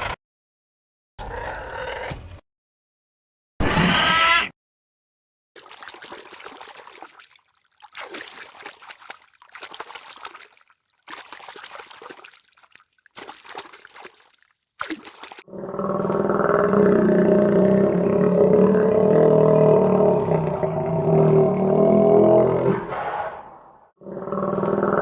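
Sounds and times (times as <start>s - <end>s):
water trickling and splashing: 5.6s - 15.5s.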